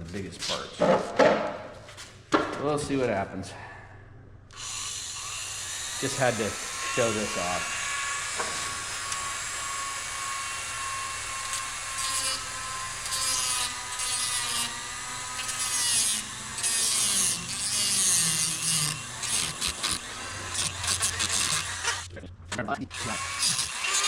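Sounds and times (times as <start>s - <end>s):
rotary tool whining: 4.5s - 22.1s, 22.9s - 24.0s.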